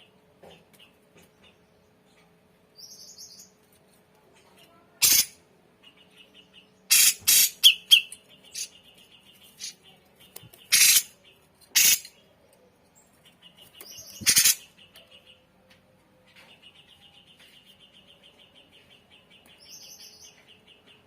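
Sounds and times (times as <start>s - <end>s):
bird harsh short calls: 5.0s - 5.4s, 6.9s - 8.7s, 10.7s - 12.2s, 14.0s - 14.7s.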